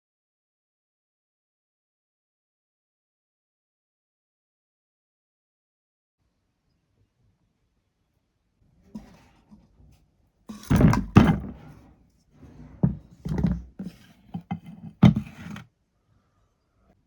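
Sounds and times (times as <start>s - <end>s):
sharp knocks and thuds: 10.5s - 11.8s.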